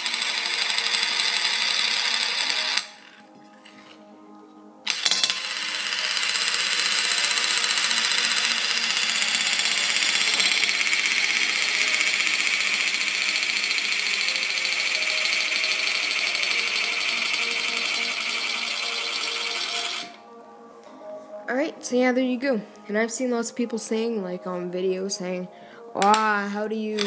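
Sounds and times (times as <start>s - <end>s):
spinning balls whirring rattle: 0.0s - 4.0s, 4.9s - 20.2s.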